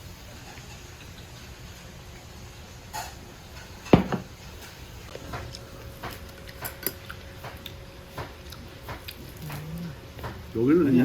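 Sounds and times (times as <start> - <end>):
dishes and utensils clinking: 2.9 - 5.4.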